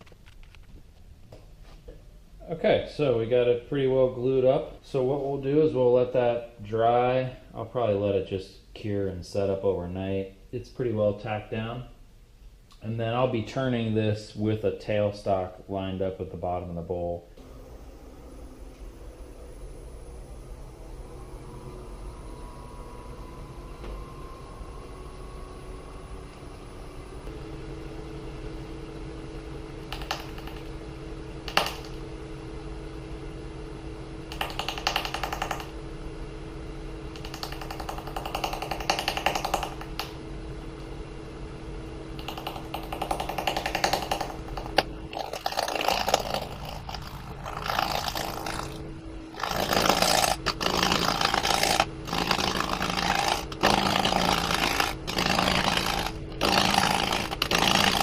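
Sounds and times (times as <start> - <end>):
gouge cutting wood: 42.2 - 48.8, 49.4 - 58.0
wood lathe humming: 42.2 - 58.0.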